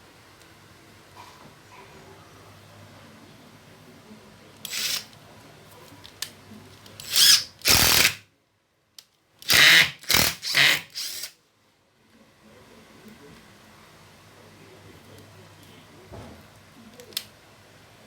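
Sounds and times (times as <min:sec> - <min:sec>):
cordless drill motor bursts: 0:04.7 - 0:05.1, 0:07.0 - 0:08.2, 0:09.5 - 0:11.3.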